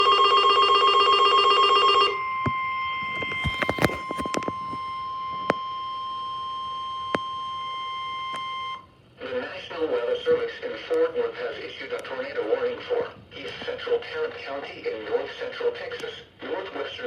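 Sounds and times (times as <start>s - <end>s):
steady single-pitched alarm tone: 0.0s - 9.0s.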